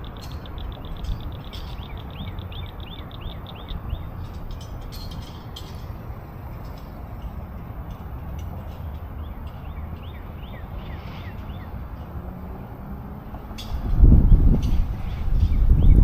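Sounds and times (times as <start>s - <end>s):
low rumble of wind or traffic: 0.0s - 16.0s.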